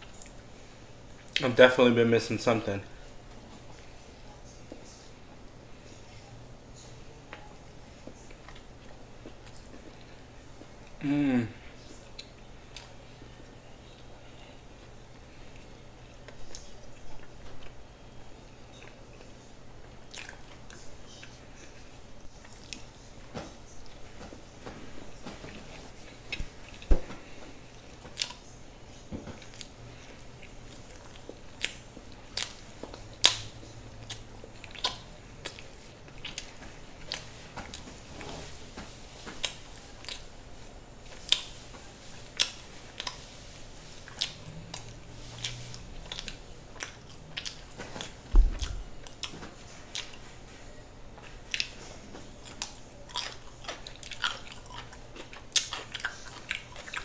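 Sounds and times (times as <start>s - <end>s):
crunchy chewing: 18.5s - 24.2s, 24.8s - 40.3s, 41.0s - 50.2s, 51.2s - 57.0s
dull low thump: 48.3s - 48.9s.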